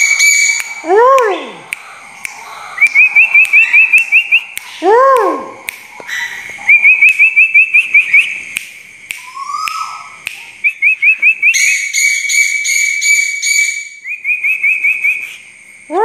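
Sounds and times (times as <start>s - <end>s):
songbird chirping: 0.0s - 16.0s
low bird whistle: 1.7s - 4.8s, 6.1s - 8.4s, 9.2s - 15.5s.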